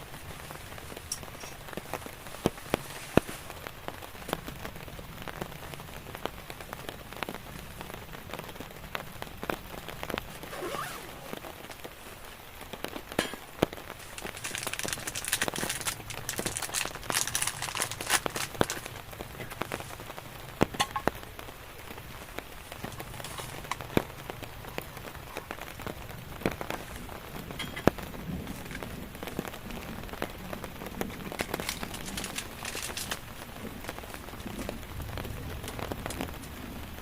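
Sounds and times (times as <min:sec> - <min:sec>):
rain falling: 0:00.0 - 0:37.0.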